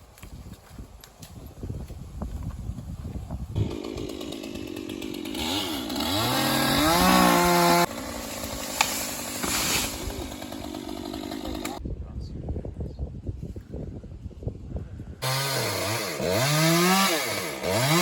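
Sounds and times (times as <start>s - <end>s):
chainsaw engine revving: 3.6s - 11.8s, 15.2s - 18.0s.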